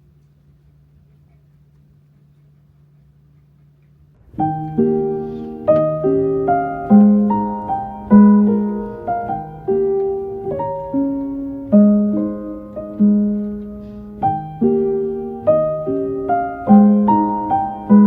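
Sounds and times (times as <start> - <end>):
faint low hum: 0.0 - 18.0
gentle piano music: 4.2 - 18.0.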